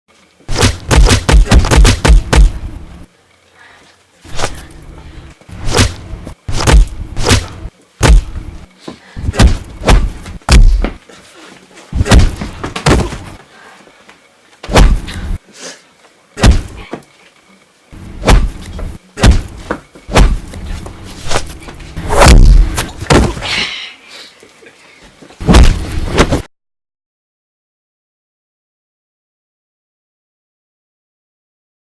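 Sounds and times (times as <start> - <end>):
heavy punch hits: 0.5 - 2.7, 5.6 - 8.5, 9.2 - 11.0, 11.9 - 13.4, 14.7 - 15.4, 16.4 - 16.8, 18.2 - 20.5, 21.3 - 23.4, 25.4 - 26.5.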